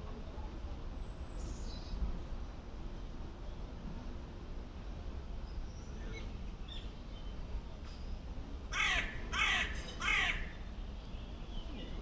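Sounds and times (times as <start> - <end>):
harsh caw-like bird calls: 8.7 - 10.7.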